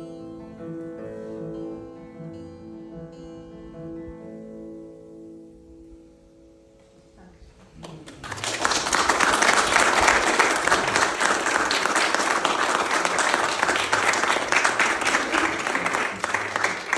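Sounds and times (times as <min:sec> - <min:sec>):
audience applauding: 0:07.8 - 0:16.9.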